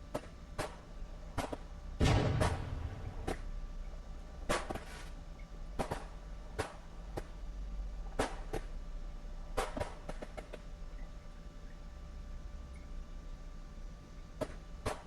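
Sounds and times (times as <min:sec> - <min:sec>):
fireworks cracking and popping: 0:02.0 - 0:03.5
low firework boom: 0:02.0 - 0:03.6.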